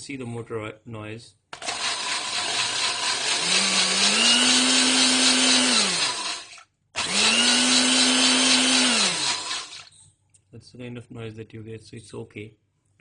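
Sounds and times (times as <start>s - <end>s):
blender motor whirring: 1.6s - 9.9s.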